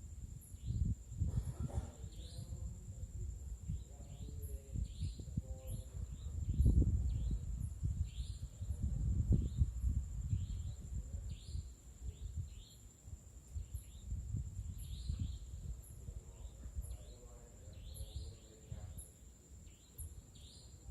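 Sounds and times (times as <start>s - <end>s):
low microphone rumble: 0.0s - 19.0s
birds chirping: 0.6s - 2.7s, 3.7s - 9.7s, 13.6s - 20.9s.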